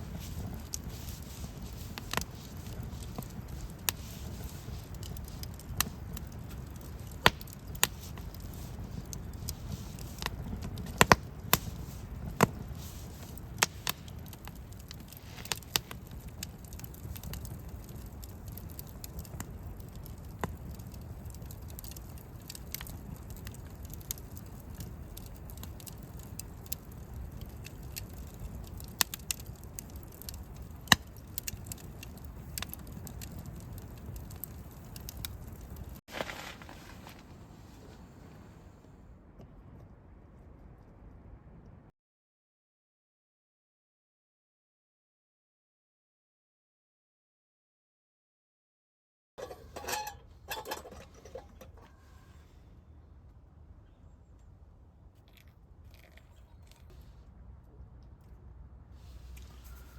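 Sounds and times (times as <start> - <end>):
low steady rumble: 0.0 - 22.4, 49.4 - 59.9
campfire crackling: 0.0 - 38.9, 49.4 - 59.9.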